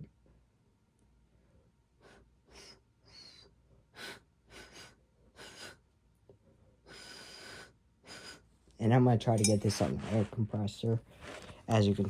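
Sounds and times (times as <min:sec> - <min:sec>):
breathy puffs into a whistle: 0:02.0 - 0:05.8, 0:06.9 - 0:08.4.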